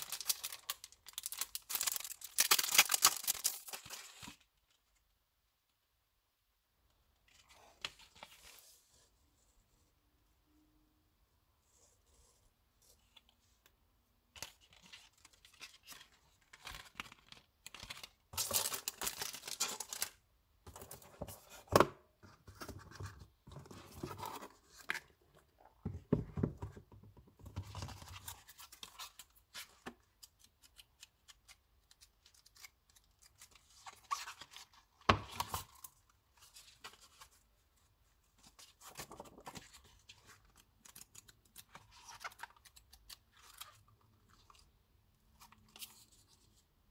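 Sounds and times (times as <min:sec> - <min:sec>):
packaging rustling and tearing: 0:00.0 - 0:04.4, 0:14.6 - 0:20.2.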